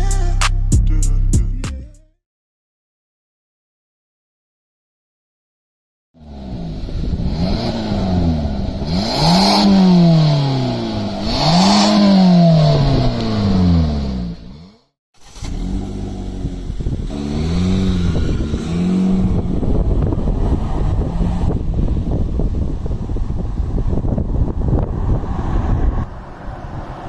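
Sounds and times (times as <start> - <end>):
car engine revving: 6.2 - 27.0.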